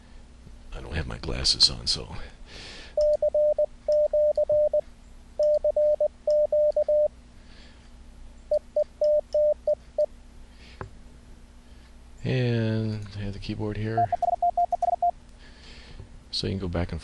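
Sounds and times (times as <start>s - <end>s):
morse code tone: 3.0s - 4.8s, 5.4s - 7.1s, 8.5s - 9.8s, 13.9s - 15.1s.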